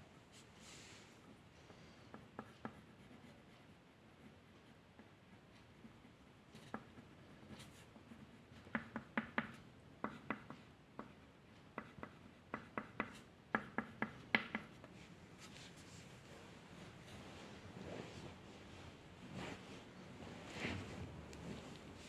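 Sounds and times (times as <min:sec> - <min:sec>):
drawing tool tapping on paper: 0:02.1 - 0:02.9, 0:06.5 - 0:14.9.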